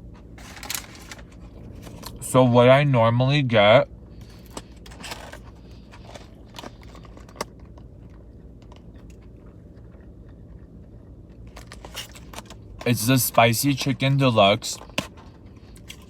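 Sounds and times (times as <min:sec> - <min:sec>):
person chewing food: 0:05.6 - 0:11.6.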